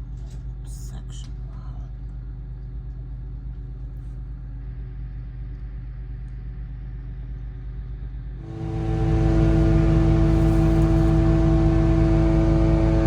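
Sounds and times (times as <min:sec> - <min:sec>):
truck engine running: 0:08.4 - 0:13.0.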